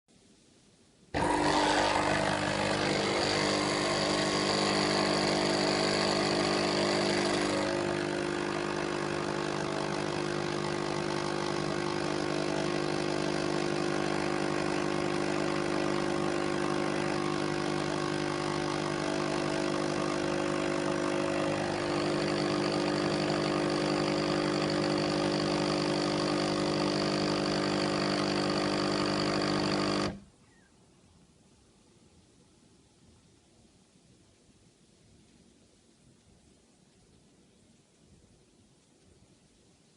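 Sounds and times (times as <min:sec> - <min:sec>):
coffee machine humming: 0:01.2 - 0:30.2.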